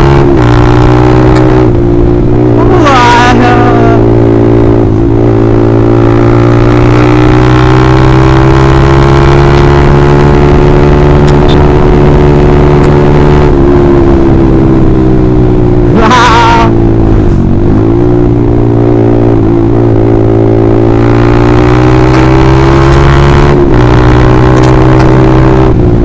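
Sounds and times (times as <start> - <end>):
motorcycle engine with loud exhaust: 0.0 - 26.0.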